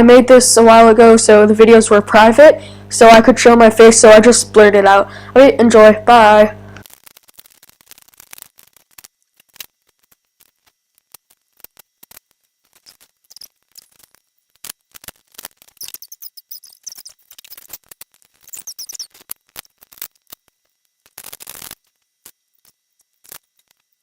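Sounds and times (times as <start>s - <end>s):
short high squeaks: 12.7s - 13.9s, 15.7s - 17.8s, 18.4s - 19.3s.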